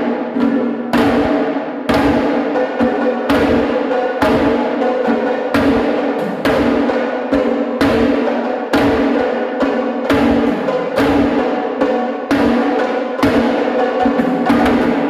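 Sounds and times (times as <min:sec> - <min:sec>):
loud drumming: 0:00.0 - 0:15.0.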